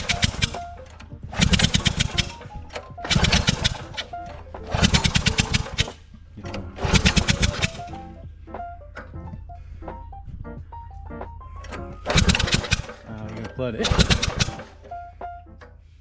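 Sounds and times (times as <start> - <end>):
small engine pull-starting: 0.0 - 6.1, 6.7 - 8.0, 11.7 - 15.0
music: 0.0 - 16.0.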